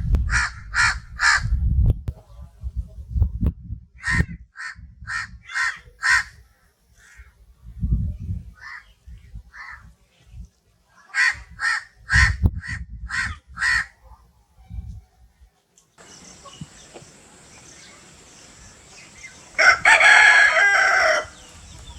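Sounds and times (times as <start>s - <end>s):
crows cawing: 4.6s - 6.4s, 8.6s - 8.9s, 11.1s - 12.3s, 13.1s - 13.9s.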